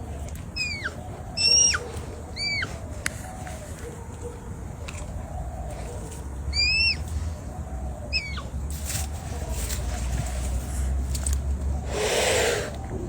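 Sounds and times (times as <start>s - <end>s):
red panda squeaky whistled calls: 0.6s - 1.8s, 2.4s - 2.8s, 6.5s - 7.1s, 8.1s - 8.5s.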